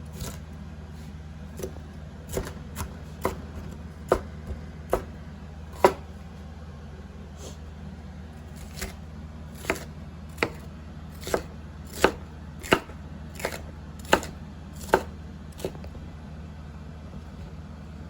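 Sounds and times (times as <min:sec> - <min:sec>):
knife chopping on cutting board: 0:00.2 - 0:00.4, 0:01.6 - 0:06.1, 0:08.6 - 0:09.0, 0:09.6 - 0:15.9.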